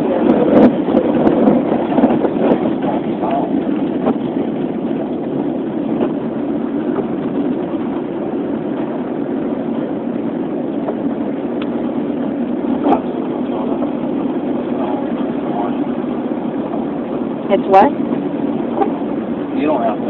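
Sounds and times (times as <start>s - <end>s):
car road and engine noise: 0.0s - 20.0s.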